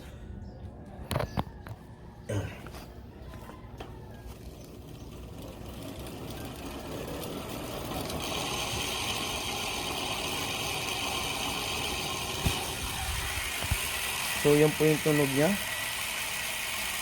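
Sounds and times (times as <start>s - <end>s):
bicycle freehub clicking: 4.4s - 17.0s.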